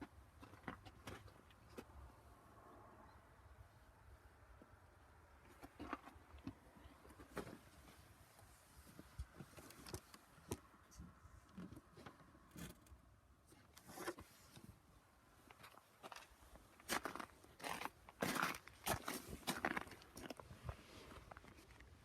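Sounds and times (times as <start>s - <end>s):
faint clicks and rustles: 5.4s - 14.8s.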